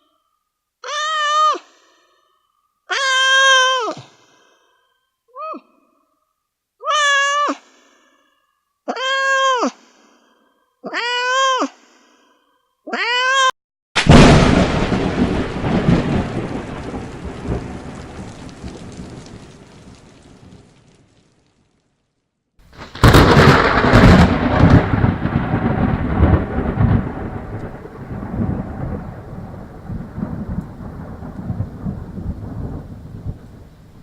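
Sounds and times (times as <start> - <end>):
cat meowing: 10.8 - 11.7, 12.9 - 13.5
thunderclap cracking and rumbling: 14.0 - 21.7, 22.6 - 34.0.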